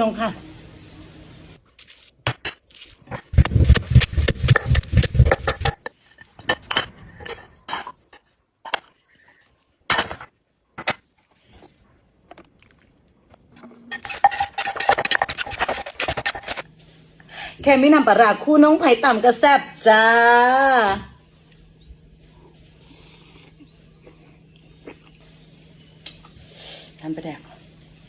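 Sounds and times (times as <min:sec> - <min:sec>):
utensils clinking against a dish: 0:13.9 - 0:16.6.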